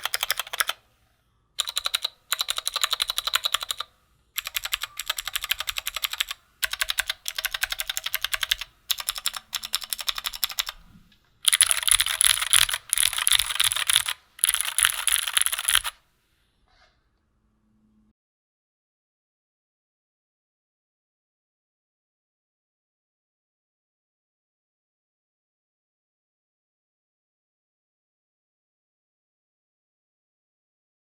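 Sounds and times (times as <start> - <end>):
clicky mechanical keyboard typing: 0.0 - 0.8, 1.6 - 10.8, 11.5 - 16.0.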